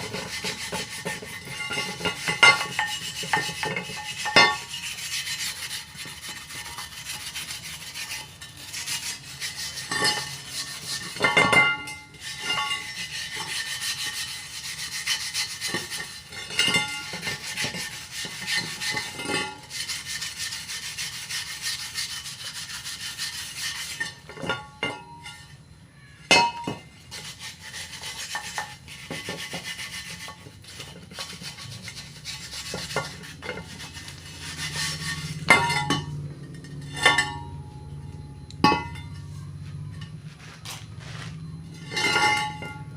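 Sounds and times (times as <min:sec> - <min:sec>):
scraping on metal wheel rim: 0:00.0 - 0:42.9.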